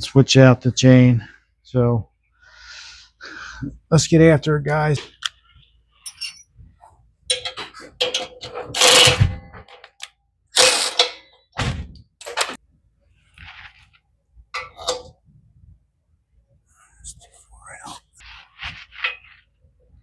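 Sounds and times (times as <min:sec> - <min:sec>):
metal tools clinking and rattling: 0:06.0 - 0:06.5, 0:07.3 - 0:10.0.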